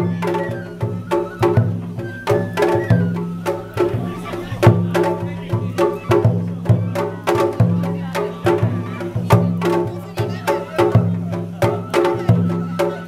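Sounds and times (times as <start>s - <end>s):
drums in quick steady rhythm: 0.0s - 13.0s
festival melody: 0.0s - 13.0s.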